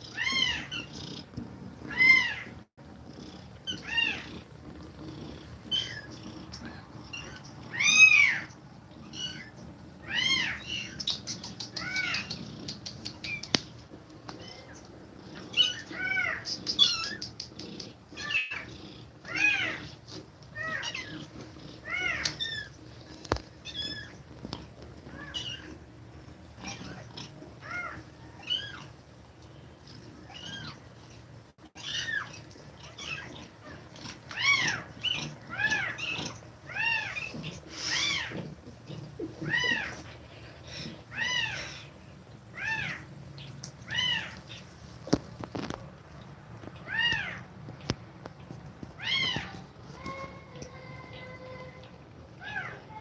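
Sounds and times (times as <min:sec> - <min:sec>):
kittens mewing: 0:00.0 - 0:02.6, 0:03.2 - 0:13.6, 0:14.4 - 0:22.8, 0:31.8 - 0:44.7, 0:46.8 - 0:47.6, 0:49.0 - 0:53.0.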